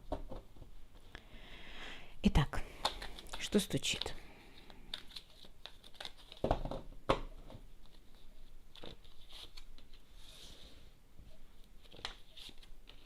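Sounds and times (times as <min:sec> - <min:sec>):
cards rustling and clicking: 0:02.8 - 0:06.6, 0:07.8 - 0:10.1, 0:11.6 - 0:13.0.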